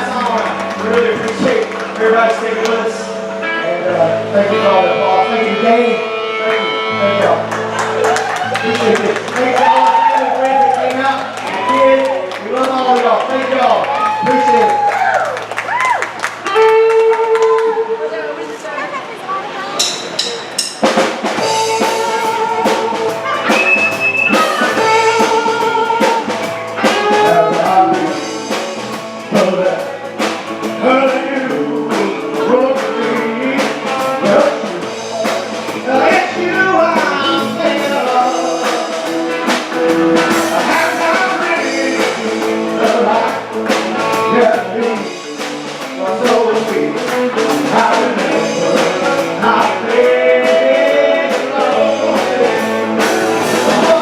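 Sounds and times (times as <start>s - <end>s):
guitar: 0.0s - 54.0s
drum kit: 19.8s - 54.0s
person singing: 21.4s - 30.0s, 30.6s - 54.0s.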